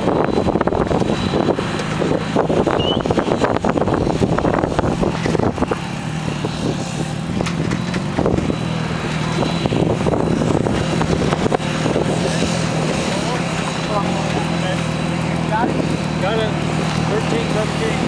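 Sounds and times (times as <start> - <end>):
car engine drone and road noise: 0.0 - 18.0
knocks and rattles: 4.1 - 17.3.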